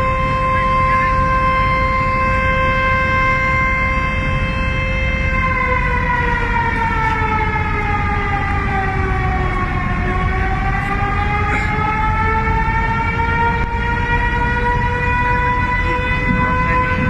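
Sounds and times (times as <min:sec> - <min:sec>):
siren sliding in pitch: 0:00.0 - 0:17.0
steady low noise: 0:05.8 - 0:17.0.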